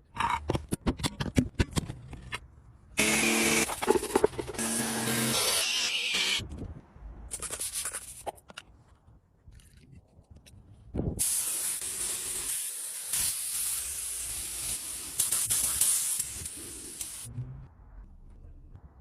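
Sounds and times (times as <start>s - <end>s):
aerosol spray can hissing: 11.2s - 17.3s
spray can clicks and spurts: 11.2s - 17.3s.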